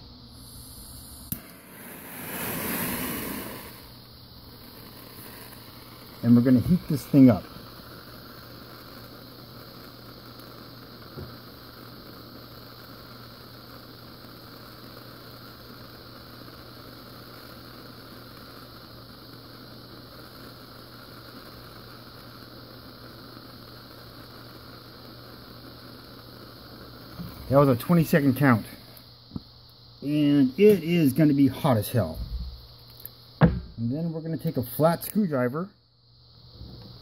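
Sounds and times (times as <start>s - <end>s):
gas torch hissing: 0.0s - 37.0s
light knock: 33.4s - 33.7s.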